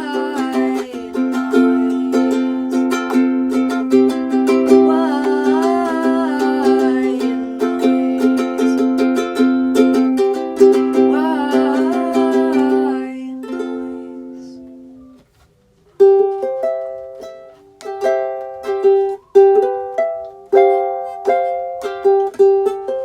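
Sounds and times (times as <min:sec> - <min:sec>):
person singing long note: 0:00.0 - 0:03.0, 0:04.5 - 0:08.9, 0:10.8 - 0:14.7
ukulele picking single notes: 0:00.0 - 0:15.2, 0:15.9 - 0:23.0
ukulele strumming chords: 0:00.0 - 0:15.2, 0:15.9 - 0:23.0.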